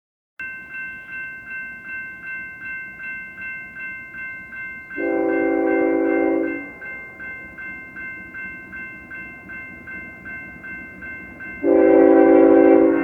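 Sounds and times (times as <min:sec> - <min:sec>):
railroad crossing bell ringing: 0:00.4 - 0:13.0
locomotive air horn blast: 0:05.0 - 0:06.7, 0:11.6 - 0:13.0.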